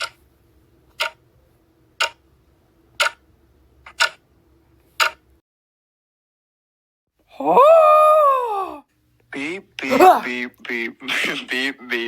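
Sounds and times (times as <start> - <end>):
clock ticking: 0.9 - 1.2, 2.0 - 2.3, 3.0 - 3.2, 3.9 - 4.2, 5.0 - 5.2.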